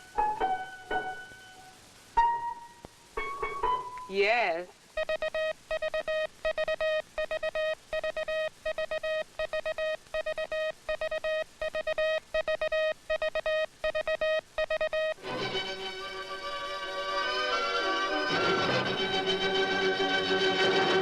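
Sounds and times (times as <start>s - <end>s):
music: 0.0s - 4.4s, 15.2s - 21.0s
morse code tone: 5.0s - 15.2s.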